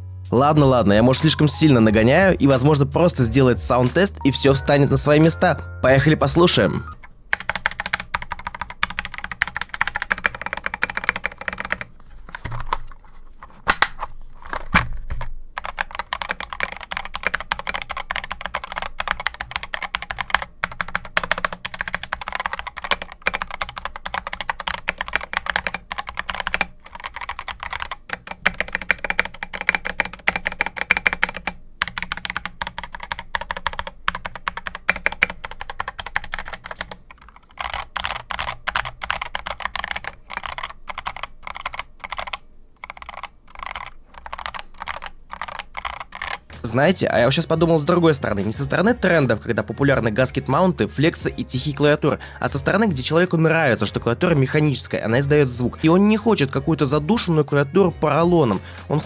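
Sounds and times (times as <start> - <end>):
mechanical keyboard typing: 6.2 - 46.8.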